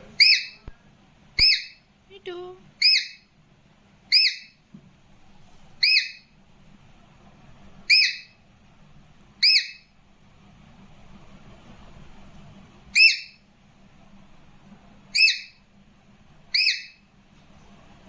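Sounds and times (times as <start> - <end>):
parrot whistling: 0.1 - 0.6, 1.4 - 1.8, 2.8 - 3.3, 4.1 - 4.6, 5.8 - 6.3, 7.8 - 8.4, 9.4 - 9.9, 12.9 - 13.4, 15.1 - 15.6, 16.5 - 17.0.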